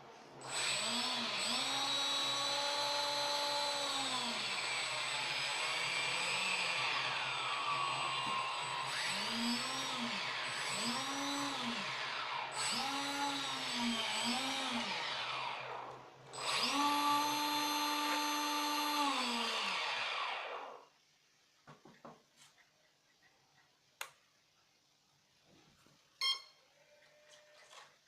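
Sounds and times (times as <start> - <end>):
electric motor propeller whine: 0.0 - 20.9.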